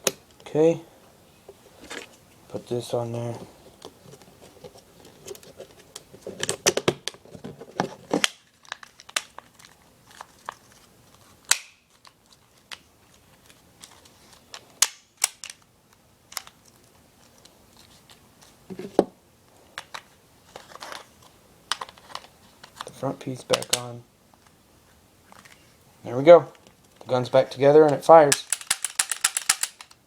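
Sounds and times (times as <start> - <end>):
pistol parts clicking and snapping: 11.5 - 11.8, 14.8 - 15.6, 27.9 - 30.0.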